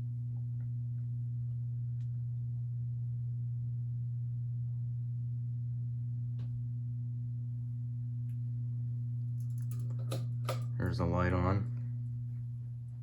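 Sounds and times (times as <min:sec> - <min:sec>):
low electrical hum: 0:00.0 - 0:13.0.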